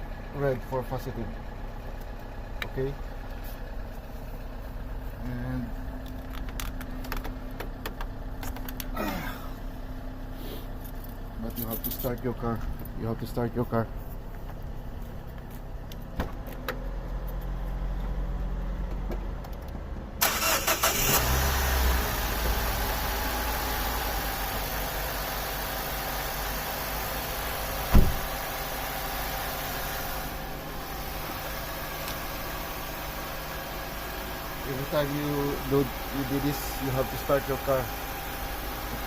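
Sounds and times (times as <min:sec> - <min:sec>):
car engine idling: 0:00.0 - 0:39.0
car engine cranking: 0:05.9 - 0:09.6, 0:18.9 - 0:23.4.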